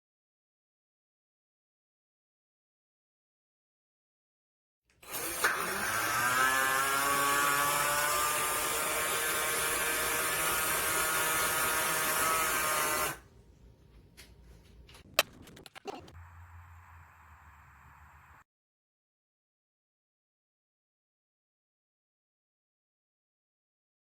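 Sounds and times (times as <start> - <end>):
cordless drill motor whining: 5.0 - 13.2
sharp clicks and knocks: 14.1 - 16.2.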